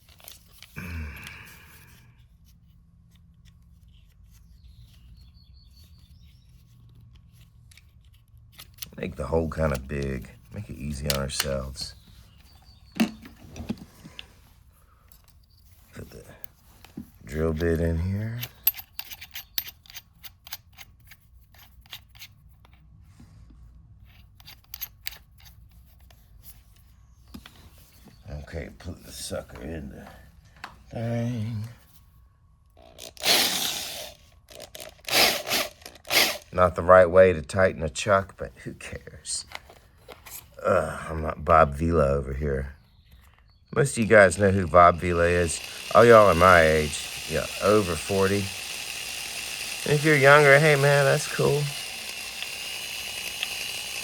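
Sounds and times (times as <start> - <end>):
metal drill bits clicking: 17.5 - 22.8, 24.1 - 25.7, 32.8 - 36.5, 43.9 - 54.0.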